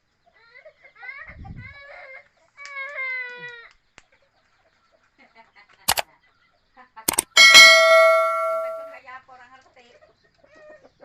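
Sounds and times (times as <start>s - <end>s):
sharp knocks: 7.1s - 8.9s
metal object clanging: 7.1s - 9.0s.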